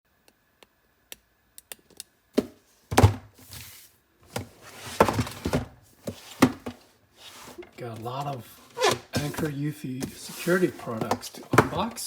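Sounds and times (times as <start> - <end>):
boxes thudding: 2.4 - 3.7, 4.3 - 12.0
rustling: 3.4 - 12.0.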